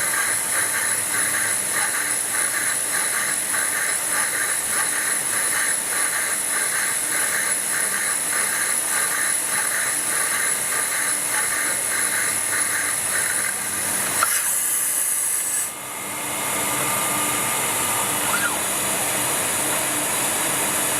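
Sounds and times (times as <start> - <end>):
lathe mechanical hiss: 0.0 - 15.8.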